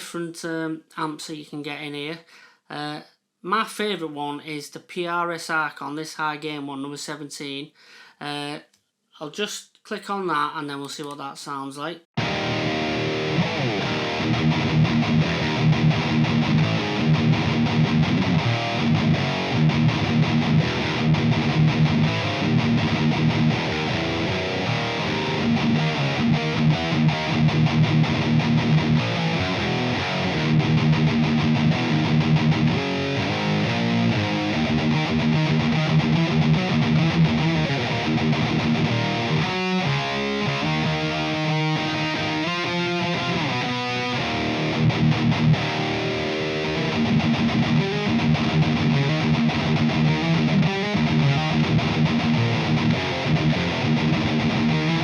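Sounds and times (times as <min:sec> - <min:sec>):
distorted electric guitar riffing: 0:12.2 - 0:55.0.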